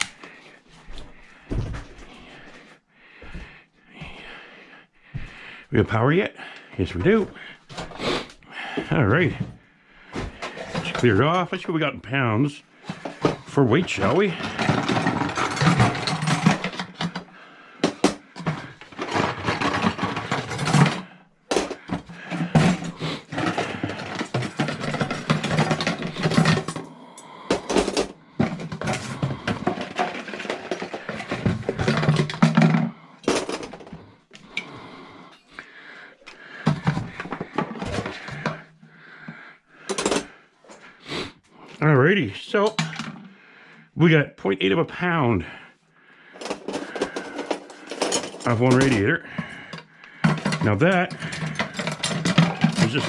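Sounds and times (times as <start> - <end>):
copper tubing clattering and clinking: 12.8 - 26.9, 27.5 - 35.5, 36.5 - 38.7, 42.6 - 43.3, 46.4 - 53.0.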